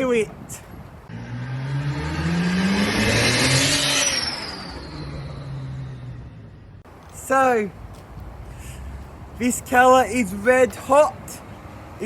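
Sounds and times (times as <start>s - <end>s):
car engine accelerating: 1.1s - 6.8s.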